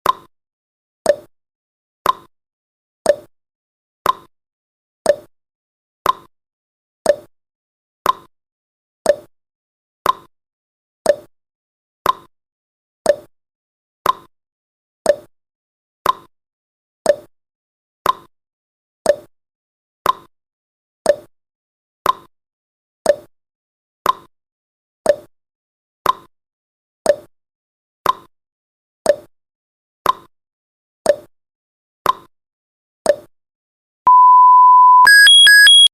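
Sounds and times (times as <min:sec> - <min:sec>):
timer ticking: 0:35.0 - 0:35.9.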